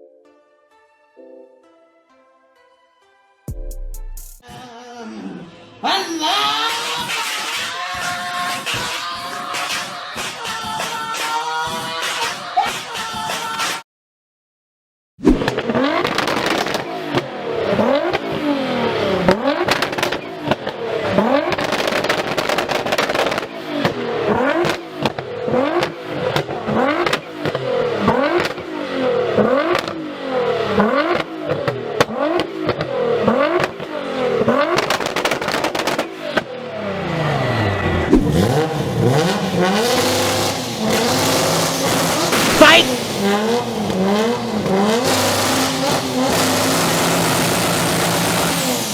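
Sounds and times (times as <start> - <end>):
engine revving with loud exhaust: 15.4 - 48.9
exhaust crackles: 27.8 - 48.9.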